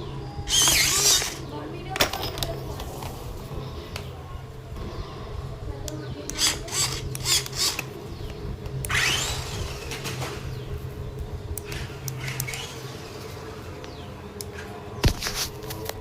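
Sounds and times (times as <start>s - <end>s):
toy car electric motor whirring: 0.5s - 1.4s, 6.3s - 7.9s, 8.9s - 10.2s, 11.7s - 13.3s.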